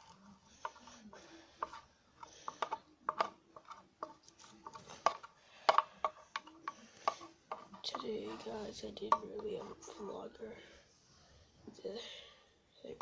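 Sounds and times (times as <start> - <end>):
utensil scraping a bowl: 0.0 - 10.2.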